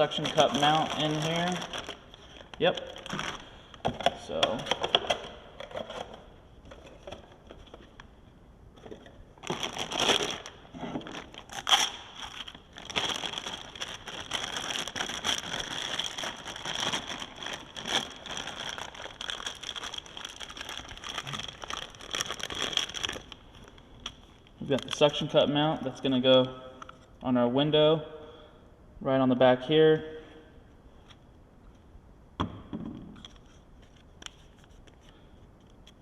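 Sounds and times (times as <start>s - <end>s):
packaging crinkling: 0.0s - 3.8s, 9.4s - 25.1s.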